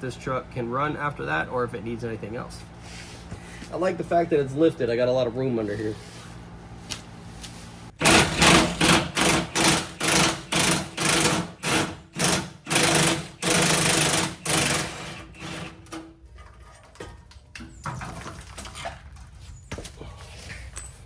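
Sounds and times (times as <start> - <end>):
power tool whirring: 8.0 - 16.1.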